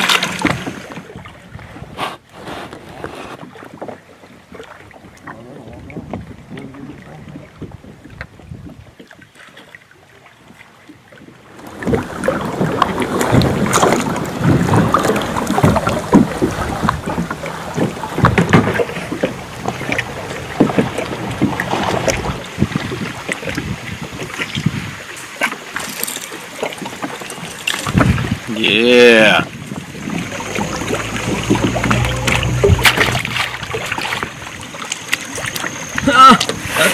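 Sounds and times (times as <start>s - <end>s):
choppy water: 0.0s - 36.9s
knocks and splashes: 0.0s - 36.9s
wind noise: 4.9s - 9.0s, 11.2s - 26.1s, 26.8s - 36.9s.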